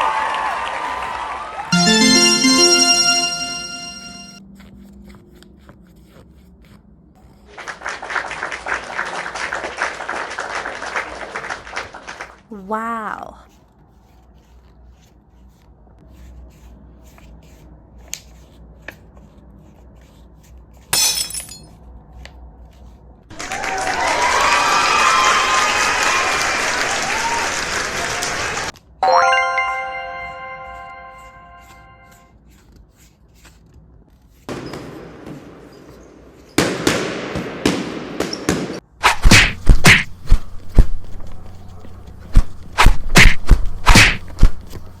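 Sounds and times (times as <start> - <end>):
applause sound effect: 0.0 - 4.4, 7.6 - 12.3, 23.3 - 32.0
glass shattering: 21.0 - 21.6
sharp thumps and knocks: 39.0 - 40.9, 42.4 - 44.6.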